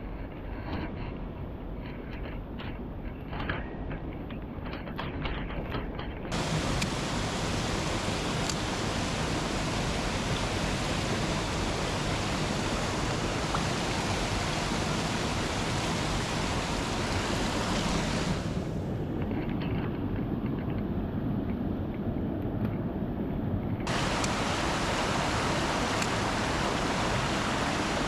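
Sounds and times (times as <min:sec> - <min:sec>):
rushing stream water: 0:06.3 - 0:18.8, 0:23.9 - 0:28.0.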